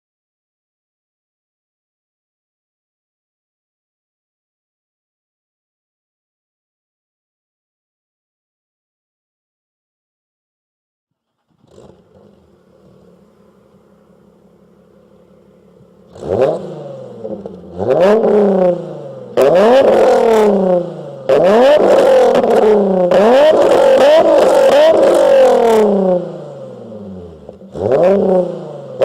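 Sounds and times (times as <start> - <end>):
car engine idling and revving: 11.2 - 29.0.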